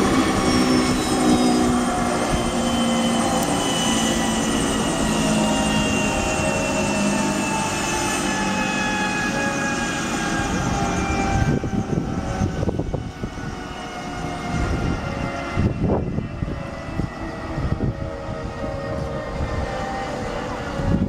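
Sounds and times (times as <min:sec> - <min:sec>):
turbine engines winding down: 0:00.0 - 0:21.0.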